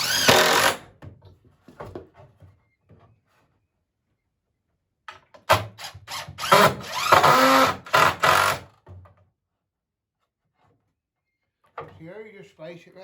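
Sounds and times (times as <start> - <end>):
power drill driving screw into wood: 0.0 - 0.9, 5.5 - 8.7.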